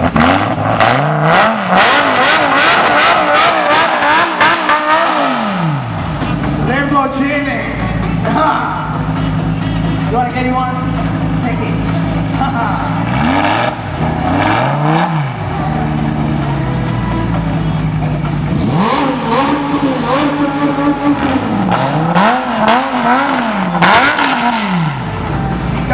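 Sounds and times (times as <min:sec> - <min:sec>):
sports car engine revving: 0:00.0 - 0:25.9.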